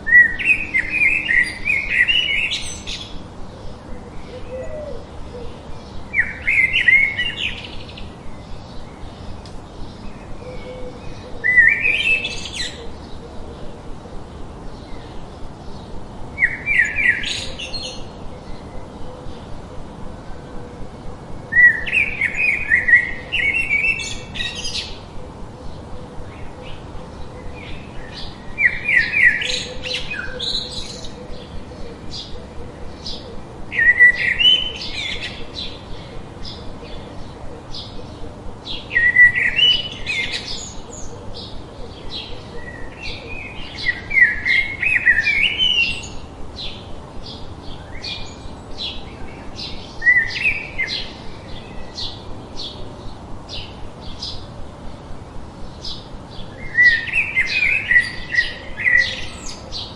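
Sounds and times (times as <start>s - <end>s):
steady bird chirping: 21.5s - 54.6s.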